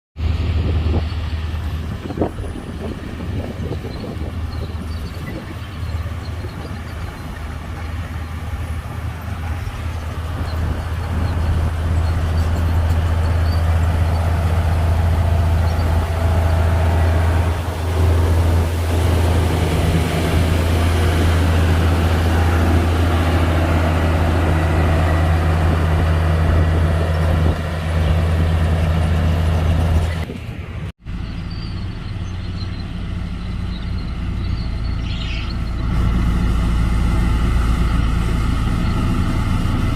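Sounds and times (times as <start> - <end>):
diesel engine drone: 0.2 - 39.9.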